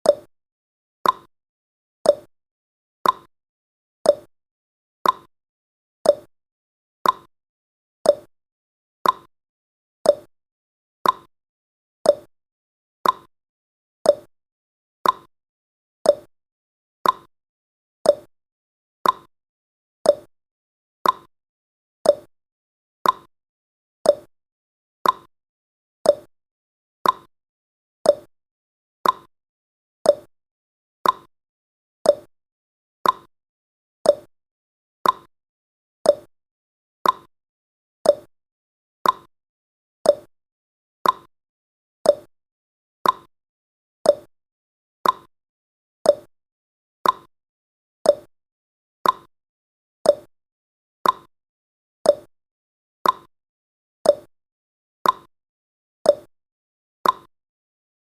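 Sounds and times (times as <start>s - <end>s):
timer ticking: 0.0s - 0.3s, 1.0s - 1.3s, 2.1s - 2.3s, 3.0s - 3.3s, 4.1s - 4.3s, 5.0s - 5.3s, 6.1s - 6.3s, 7.0s - 7.3s, 8.1s - 8.3s, 9.0s - 9.3s, 10.1s - 10.3s, 11.0s - 11.3s, 12.1s - 12.3s, 13.0s - 13.3s, 14.1s - 14.3s, 15.0s - 15.3s, 16.1s - 16.3s, 17.0s - 17.3s, 18.1s - 18.3s, 19.0s - 19.3s, 20.1s - 20.3s, 21.0s - 21.3s, 22.0s - 22.3s, 23.0s - 23.3s, 24.1s - 24.3s, 25.0s - 25.3s, 26.0s - 26.3s, 27.0s - 27.3s, 28.0s - 28.3s, 29.0s - 29.3s, 30.1s - 30.3s, 31.0s - 31.3s, 32.0s - 32.3s, 33.0s - 33.3s, 34.0s - 34.3s, 35.0s - 35.3s, 36.0s - 36.3s, 37.0s - 37.3s, 38.0s - 38.3s, 39.0s - 39.3s, 40.0s - 40.3s, 41.0s - 41.3s, 42.1s - 42.3s, 43.0s - 43.3s, 44.1s - 44.3s, 45.0s - 45.3s, 46.1s - 46.3s, 47.0s - 47.3s, 48.1s - 48.3s, 49.0s - 49.3s, 50.1s - 50.3s, 51.0s - 51.3s, 52.1s - 52.3s, 53.0s - 53.3s, 54.1s - 54.3s, 55.0s - 55.3s, 56.1s - 56.3s, 57.0s - 57.3s.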